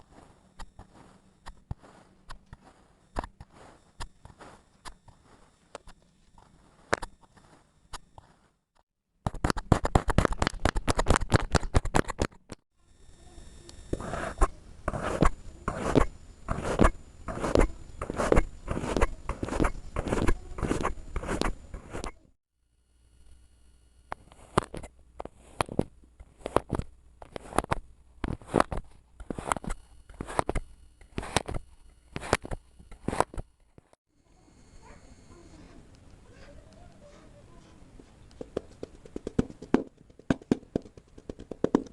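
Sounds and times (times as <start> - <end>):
sand being cut crackling: 13.9 - 22.1.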